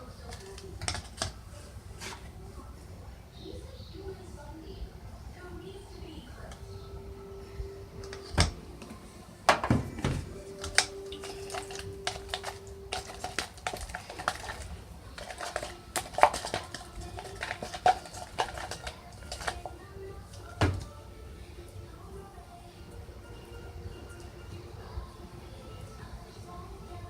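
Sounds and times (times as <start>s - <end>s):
faint steady hum: 0.0s - 27.0s
utensil scraping against a bowl: 10.6s - 20.5s.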